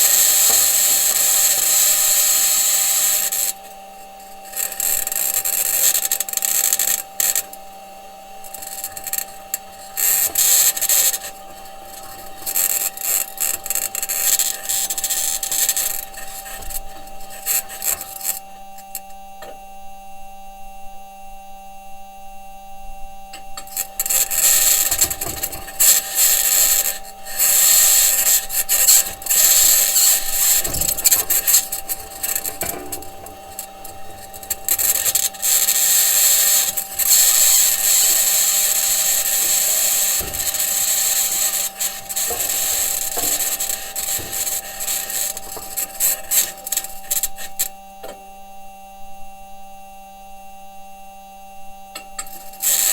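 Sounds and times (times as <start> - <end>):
steady hum: 0.0 - 52.9
wheels grinding over ground: 8.4 - 18.5, 23.3 - 47.8
high-pitched scratching: 8.5 - 18.4, 23.7 - 47.7.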